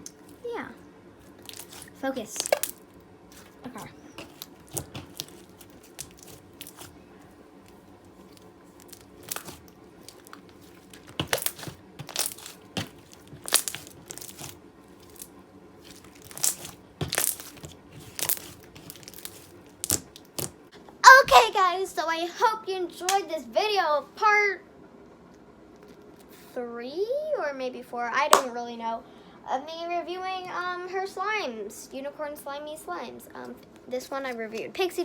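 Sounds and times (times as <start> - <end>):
slime clicking and popping: 2.4 - 2.8, 4.2 - 6.9, 8.8 - 15.3, 15.9 - 20.6.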